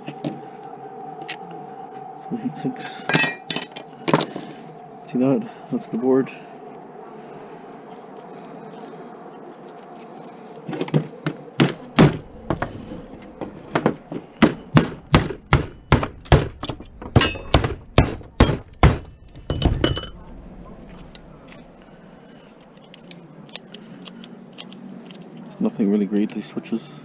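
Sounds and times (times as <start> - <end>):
clattering ringing pieces: 3.1 - 3.8, 18.4 - 20.2.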